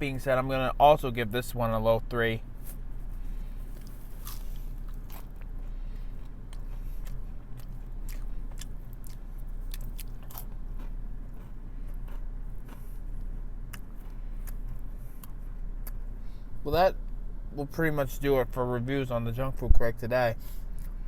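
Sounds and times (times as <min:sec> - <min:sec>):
crunchy chewing: 0:02.6 - 0:16.1.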